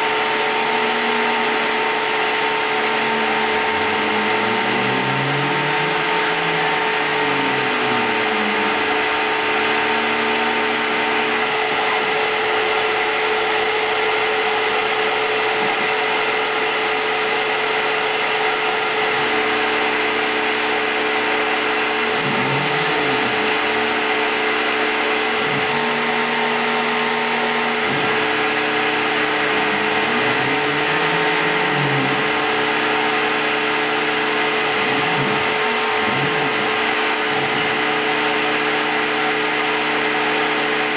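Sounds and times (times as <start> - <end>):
spindle whine: 0.0 - 40.9
stepper motors whining in sweeps: 0.0 - 40.9.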